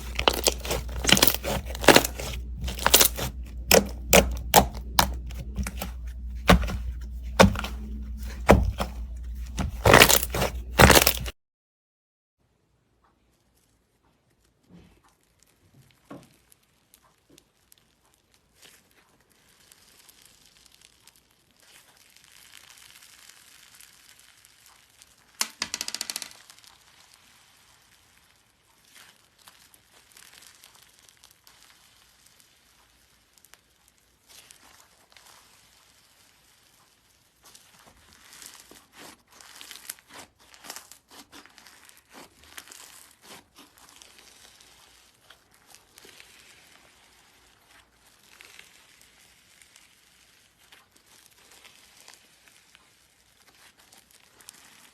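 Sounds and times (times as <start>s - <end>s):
slime crackling and clicking: 0.0s - 11.3s.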